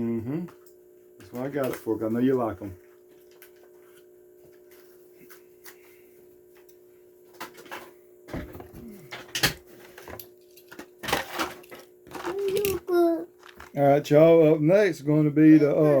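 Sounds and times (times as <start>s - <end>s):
plastic packaging crinkling: 12.1s - 13.8s.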